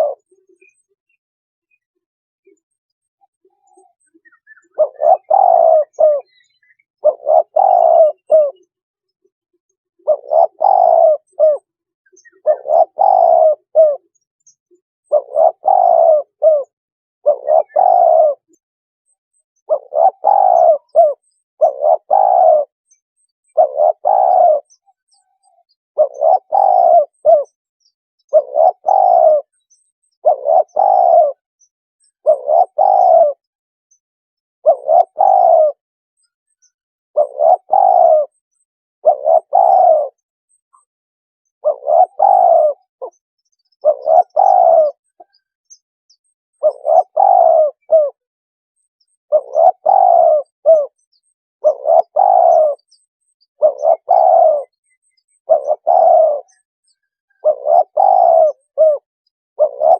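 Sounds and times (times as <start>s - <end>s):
dove cooing: 0.0s - 0.8s, 3.2s - 8.7s, 10.0s - 14.2s, 15.1s - 18.6s, 19.6s - 22.8s, 23.4s - 27.6s, 28.2s - 31.4s, 32.1s - 33.5s, 34.6s - 36.3s, 37.2s - 40.9s, 41.6s - 43.2s, 43.8s - 45.5s, 46.5s - 48.3s, 49.3s - 59.9s.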